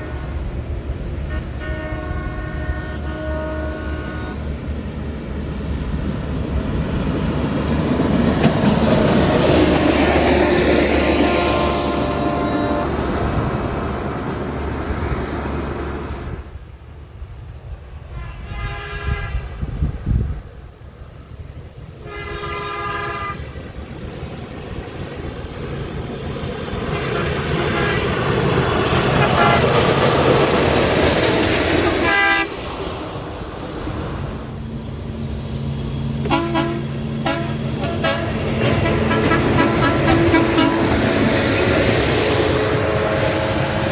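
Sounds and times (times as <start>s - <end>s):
train air horn: 0.0s - 0.6s, 1.3s - 4.4s, 9.6s - 13.5s, 18.1s - 19.7s, 22.0s - 23.5s, 26.9s - 28.3s, 29.0s - 30.1s, 32.0s - 32.6s, 36.2s - 43.9s
rail vehicles rushing by: 0.0s - 43.9s
train rumble: 0.0s - 43.9s.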